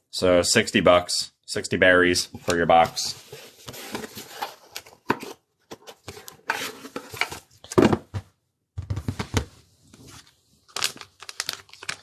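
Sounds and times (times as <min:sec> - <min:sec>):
box being handled and opened: 0:02.3 - 0:11.9
knocks and scrapes on box: 0:03.2 - 0:08.2.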